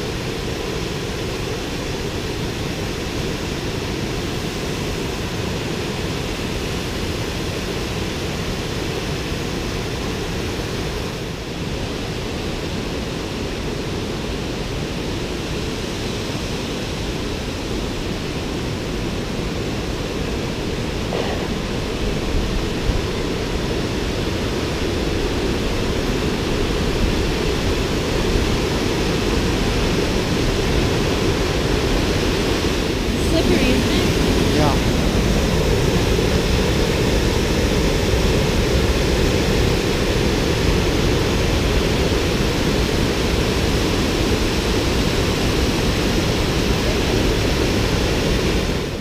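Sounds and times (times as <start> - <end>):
waterfall rushing: 28.6 - 37.8.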